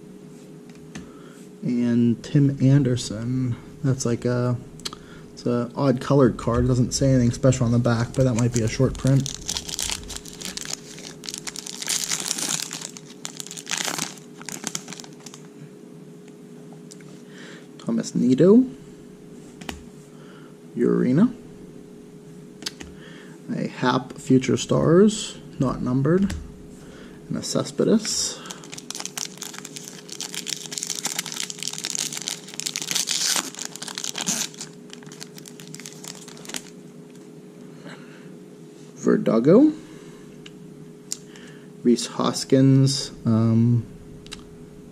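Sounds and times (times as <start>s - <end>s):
foil wrapper crinkling: 7.5s - 15.5s, 28.0s - 36.8s.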